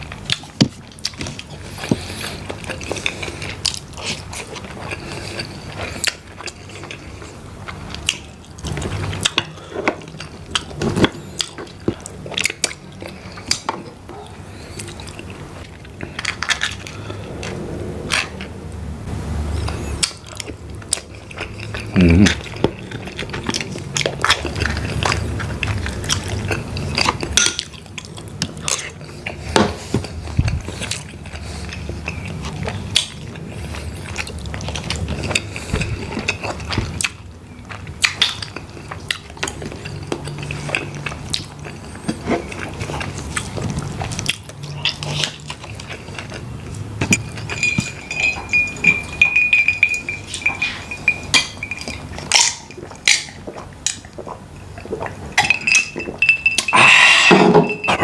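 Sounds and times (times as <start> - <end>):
eating noises: 0.0 - 18.8, 19.5 - 58.0
shells and utensils clinking on plate: 47.0 - 53.2, 55.3 - 58.0
thin steady high tone: 47.1 - 52.2, 55.4 - 58.0.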